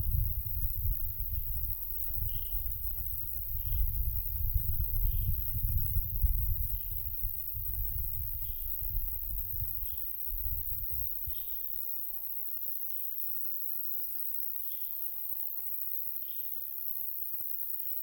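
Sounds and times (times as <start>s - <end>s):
wind gusting on microphone: 0.0s - 11.6s.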